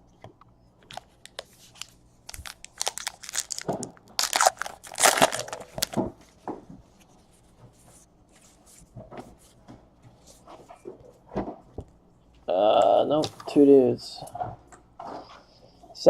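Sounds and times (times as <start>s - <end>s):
plastic wrapper crinkling: 0.9s - 6.1s.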